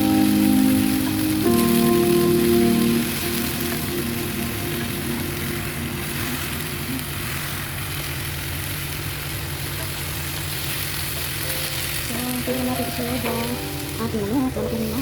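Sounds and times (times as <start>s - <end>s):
music melody: 0.0s - 8.2s, 11.4s - 15.0s
food sizzling in hot oil: 0.0s - 15.0s.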